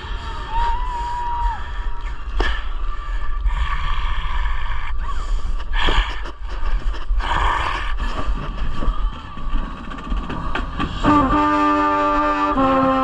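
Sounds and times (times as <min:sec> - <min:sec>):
brass and percussion playing: 0:11.0 - 0:13.0.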